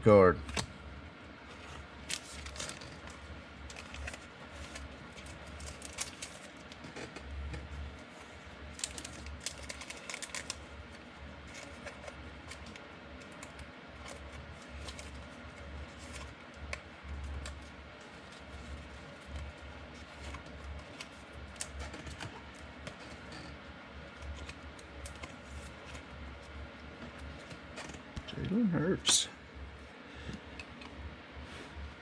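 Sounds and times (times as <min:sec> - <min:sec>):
trading cards clicking and rustling: 0:02.0 - 0:07.7, 0:08.7 - 0:10.6.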